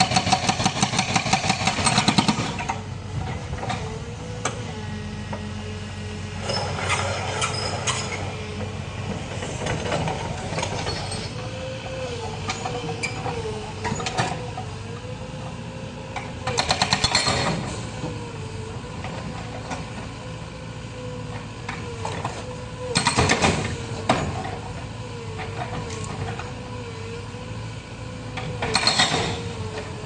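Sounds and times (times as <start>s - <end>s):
excavator engine running: 0.0s - 30.0s.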